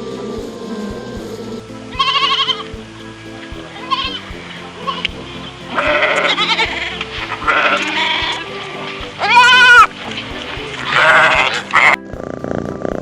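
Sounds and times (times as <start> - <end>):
background music: 0.0 - 13.0
bleat-like animal calls: 1.9 - 2.8, 3.8 - 12.0.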